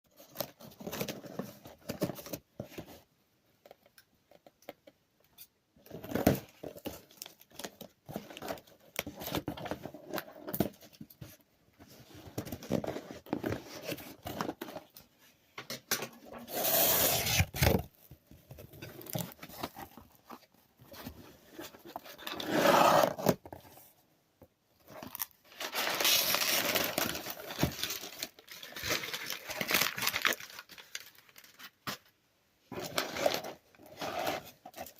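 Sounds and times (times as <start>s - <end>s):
packaging rustling and crinkling: 24.9s - 32.1s.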